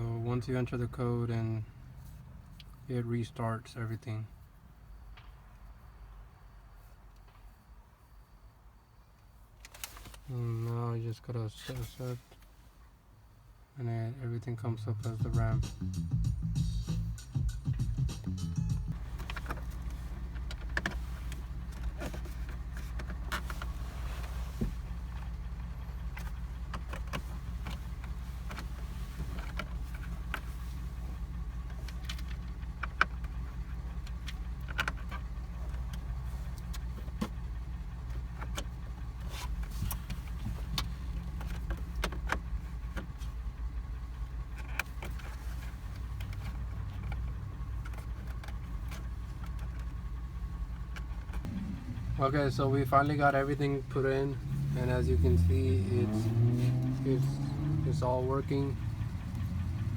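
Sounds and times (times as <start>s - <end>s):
truck engine idling: 14.8s - 59.9s.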